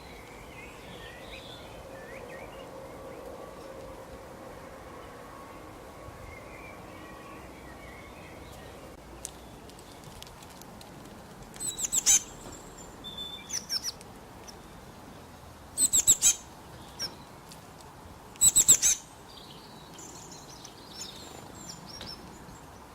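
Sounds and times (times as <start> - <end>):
faint bird chirps: 11.6 - 14.7, 15.8 - 17.2, 18.4 - 22.3.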